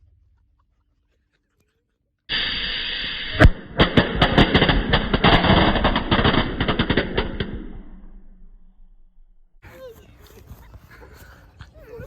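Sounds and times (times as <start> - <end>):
firecracker hiss: 2.3 - 9.5
firecracker cracks: 2.3 - 9.6
loud firecracker bang: 2.3 - 9.6.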